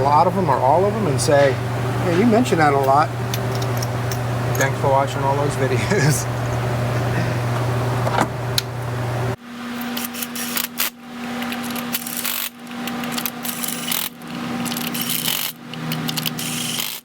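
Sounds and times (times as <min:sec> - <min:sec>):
steady shop hum: 0:00.0 - 0:17.0
metal parts clicking and scraping: 0:09.8 - 0:17.0.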